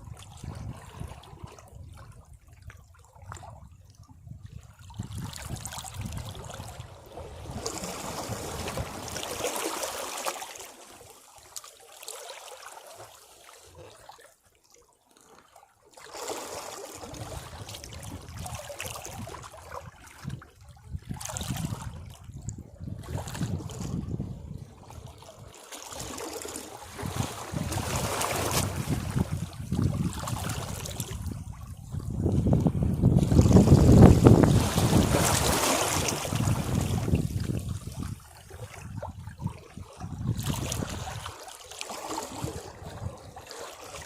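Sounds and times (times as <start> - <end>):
sea waves washing against rocks: 7.0 - 10.8, 26.0 - 31.4, 32.0 - 38.2.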